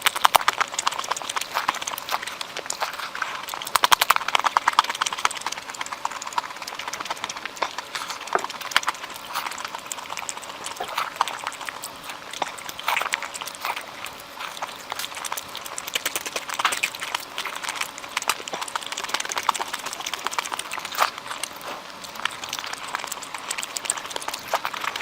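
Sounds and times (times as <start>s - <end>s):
wet chewing and lip smacking: 0.0s - 25.0s.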